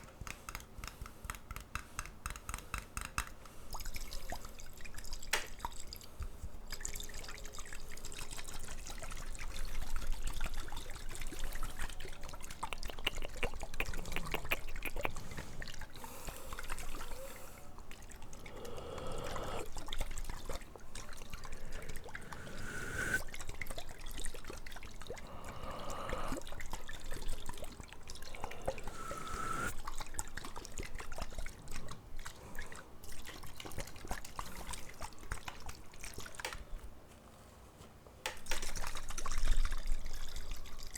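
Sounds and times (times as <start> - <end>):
water pouring into glasses: 3.8 - 36.4.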